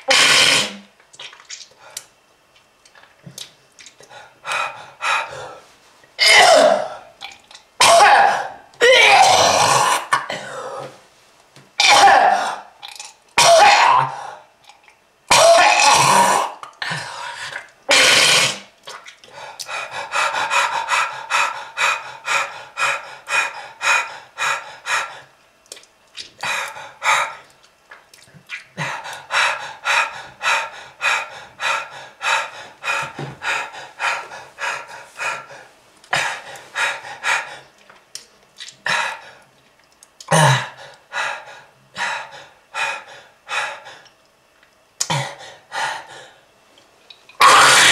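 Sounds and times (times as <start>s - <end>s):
person coughing hard: 6.2s - 7.0s, 7.8s - 10.9s, 11.8s - 12.7s, 13.4s - 14.2s, 15.3s - 16.6s, 40.3s - 40.8s.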